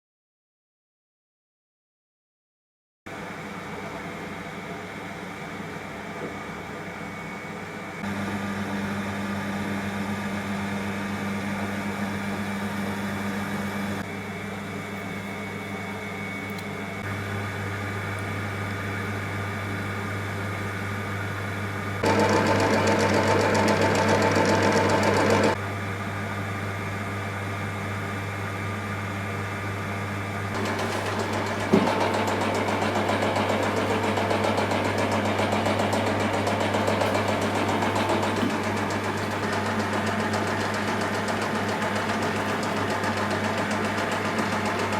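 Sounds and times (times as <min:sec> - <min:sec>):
lathe motor humming: 0:08.0 - 0:14.1, 0:17.1 - 0:25.6, 0:30.1 - 0:44.9.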